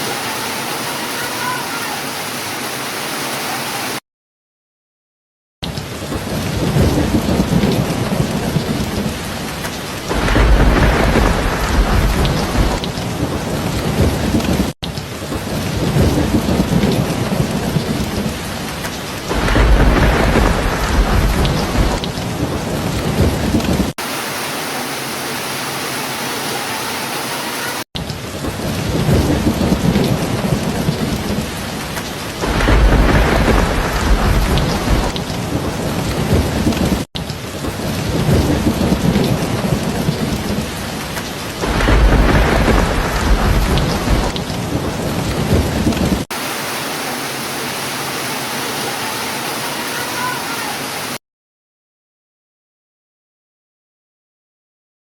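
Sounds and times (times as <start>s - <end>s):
heavy rain: 0.0s - 4.0s, 5.6s - 51.2s
low rolling thunder: 5.9s - 23.9s, 28.2s - 46.3s.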